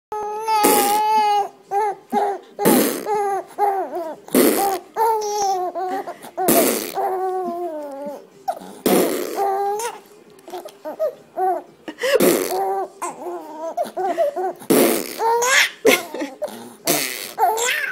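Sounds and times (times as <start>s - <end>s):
baby squealing laughs and coos: 0.2s - 16.4s, 17.3s - 17.9s
fart noises: 0.6s - 1.0s, 2.6s - 3.1s, 4.3s - 4.8s, 6.4s - 7.1s, 8.6s - 9.6s, 12.2s - 12.8s, 14.6s - 15.4s, 16.5s - 17.7s.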